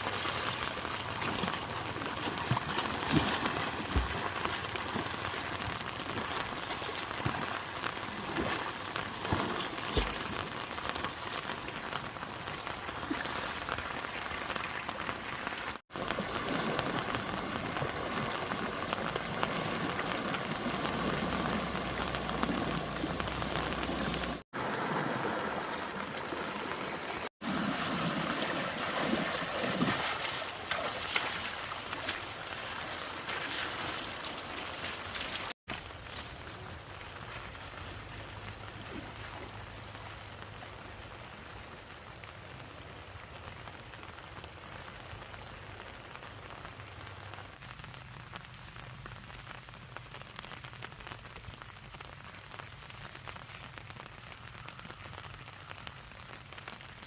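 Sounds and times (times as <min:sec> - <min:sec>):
running water: 0:00.0 - 0:40.2
steady rain falling: 0:00.0 - 0:57.0.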